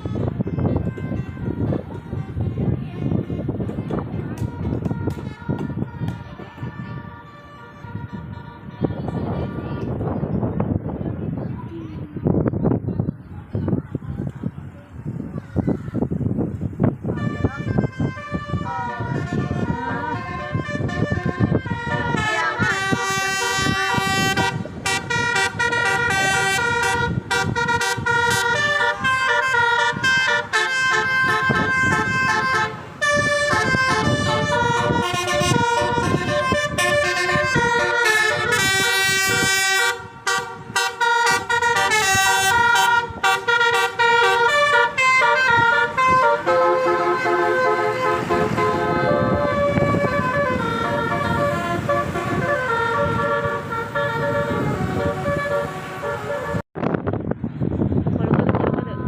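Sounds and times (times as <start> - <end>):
bus multi-tone air horn melody: 0.0 - 9.4, 17.0 - 56.7
vehicle rumble: 0.0 - 59.0.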